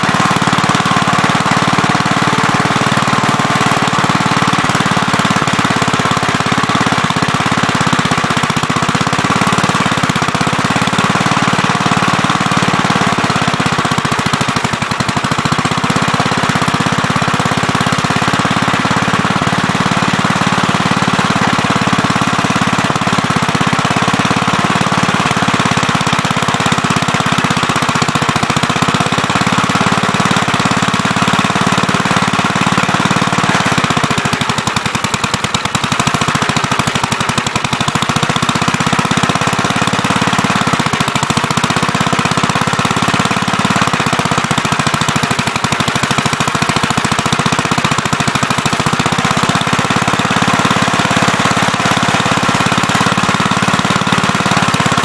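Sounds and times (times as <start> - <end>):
backhoe engine running: 0.0 - 55.0.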